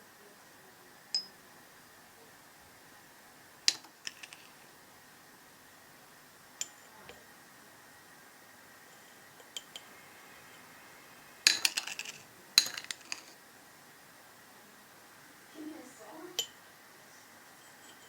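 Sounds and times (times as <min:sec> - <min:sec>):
utensil clinking against dishes: 0:01.1 - 0:01.4, 0:03.6 - 0:04.6, 0:06.6 - 0:07.2, 0:08.9 - 0:09.9, 0:11.4 - 0:13.4, 0:16.4 - 0:16.6, 0:17.6 - 0:18.0.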